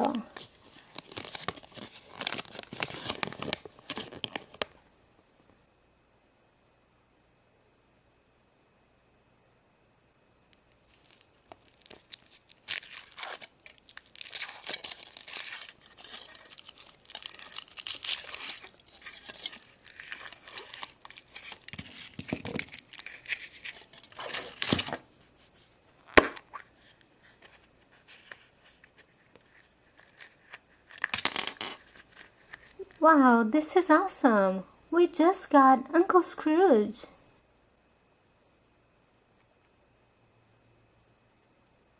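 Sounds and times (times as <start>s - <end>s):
foil wrapper crinkling: 0.1s - 4.8s, 10.7s - 26.4s, 27.3s - 33.0s.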